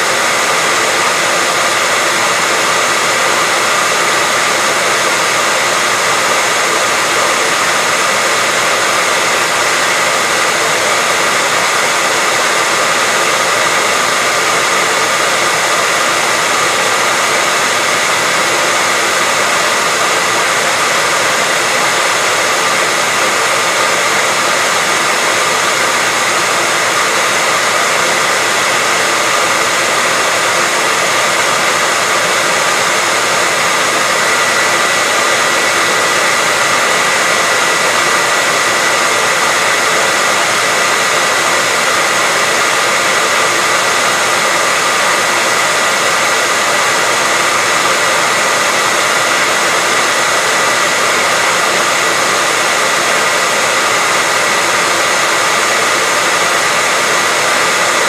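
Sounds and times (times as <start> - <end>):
hairdryer running: 0.0 - 58.0.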